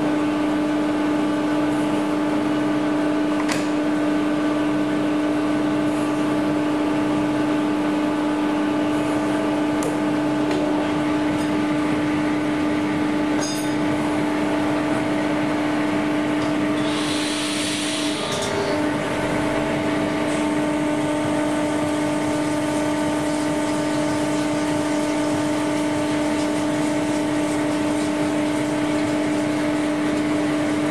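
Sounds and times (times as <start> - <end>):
lathe whining: 11.0 - 30.9
brief hiss: 16.8 - 18.3.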